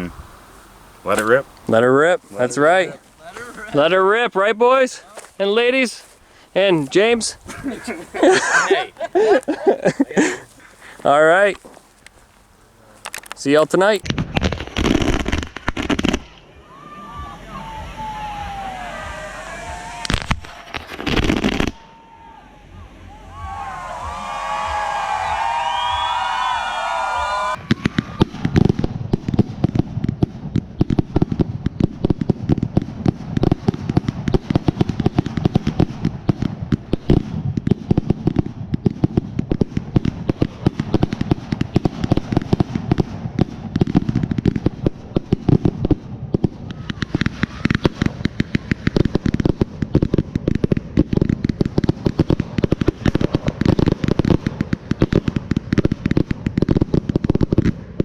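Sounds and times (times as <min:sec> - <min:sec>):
firework shells launching and bursting: 0:00.0 - 0:04.0, 0:04.8 - 0:16.5, 0:18.4 - 0:22.0, 0:27.5 - 0:58.0.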